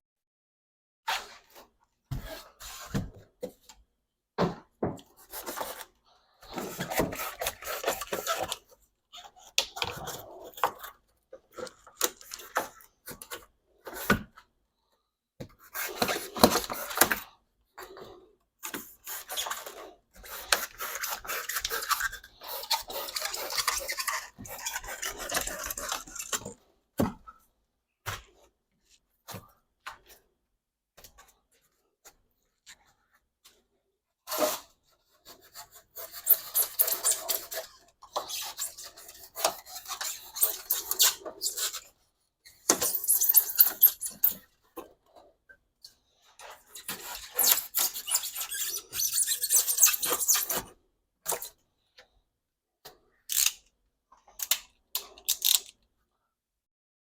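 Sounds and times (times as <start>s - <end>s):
foam board and plywood scraping: 1.1s - 3.6s, 4.4s - 8.7s.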